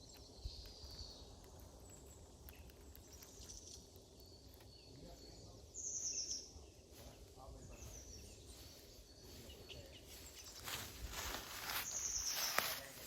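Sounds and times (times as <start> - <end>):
birds chirping: 0.0 - 13.0
footsteps in dry leaves: 6.8 - 13.0.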